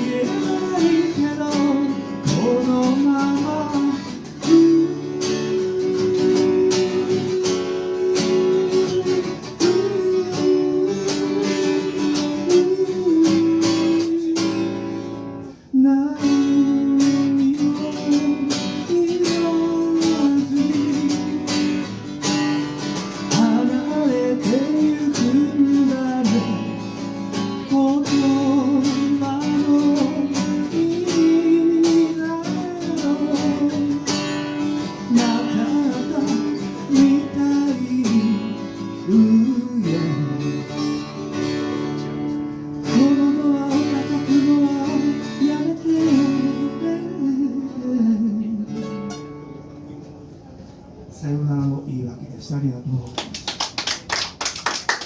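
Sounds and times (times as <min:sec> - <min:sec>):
acoustic guitar strumming chords: 0:00.0 - 0:50.4.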